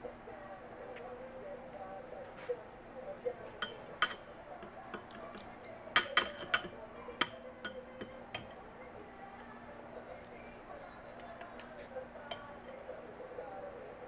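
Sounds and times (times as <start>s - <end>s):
utensil clinking on dishware: 3.2s - 8.6s, 11.2s - 13.6s.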